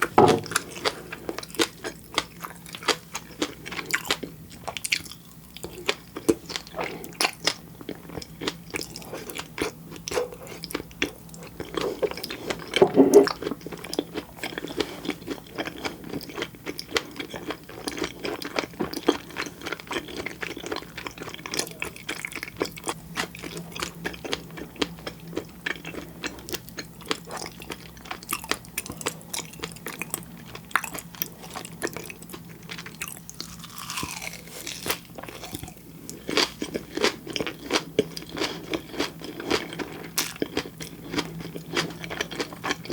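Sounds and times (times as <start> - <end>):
wet chewing with crunches: 0.0 - 42.9.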